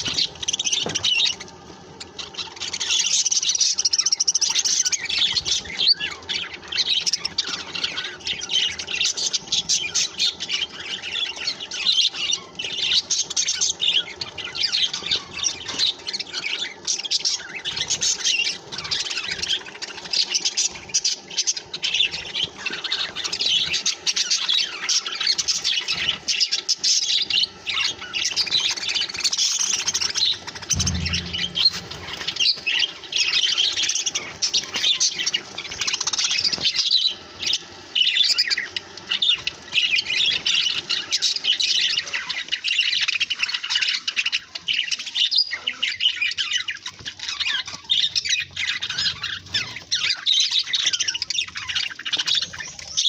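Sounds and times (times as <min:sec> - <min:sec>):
budgerigars chattering and chirping: 0:00.0 - 0:32.2, 0:33.7 - 0:53.0
low bump: 0:30.7 - 0:32.5.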